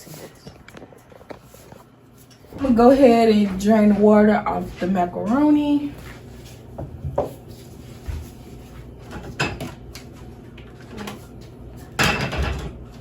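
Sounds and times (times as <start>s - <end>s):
kitchenware knocking and clattering: 9.1s - 9.8s, 12.0s - 12.8s.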